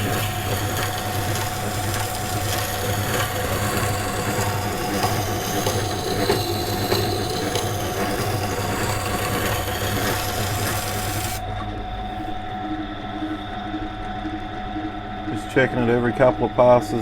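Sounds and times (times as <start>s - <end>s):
knife scraping on grinding wheel: 0.0s - 11.5s
grinder motor hum: 0.0s - 14.8s.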